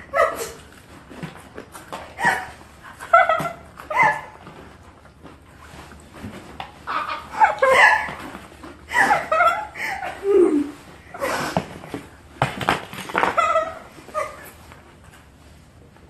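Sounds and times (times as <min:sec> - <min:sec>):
people laughing and giggling: 0:08.9 - 0:10.8.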